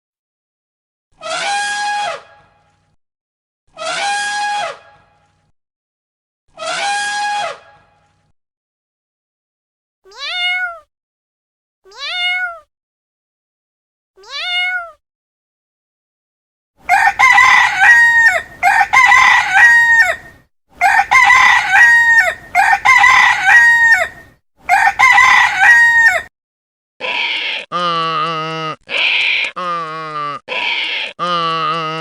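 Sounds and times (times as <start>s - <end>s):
cat meowing: 10.1s - 10.9s, 11.9s - 12.7s, 14.2s - 15.0s
rooster crowing: 16.8s - 26.3s.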